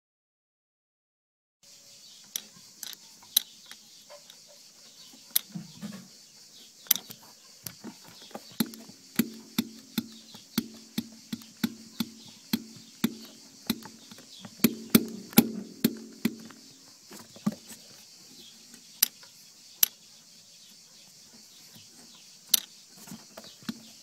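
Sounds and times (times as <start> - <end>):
suspension clunking knocks: 7.0 - 17.7.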